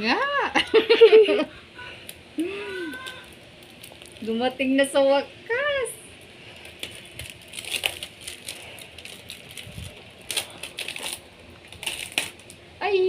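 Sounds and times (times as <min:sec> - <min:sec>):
packaging crinkling: 0:02.1 - 0:04.6, 0:06.2 - 0:12.6.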